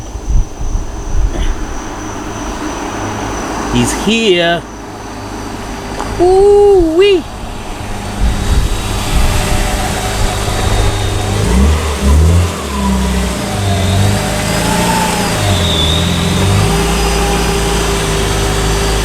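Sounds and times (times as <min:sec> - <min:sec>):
car engine revving: 0:01.8 - 0:19.0.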